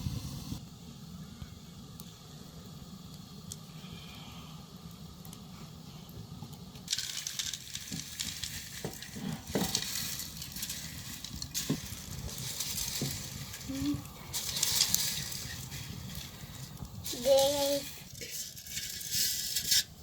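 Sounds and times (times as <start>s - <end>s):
food sizzling in a pot: 6.9s - 20.0s.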